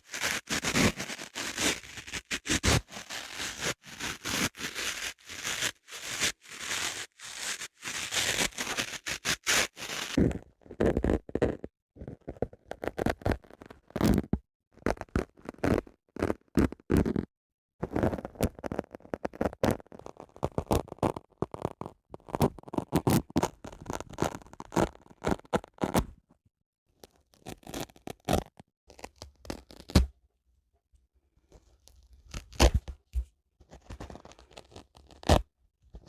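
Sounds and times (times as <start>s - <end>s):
dry sponge scratching and squeezing: 0.0s - 10.2s, 33.9s - 35.4s.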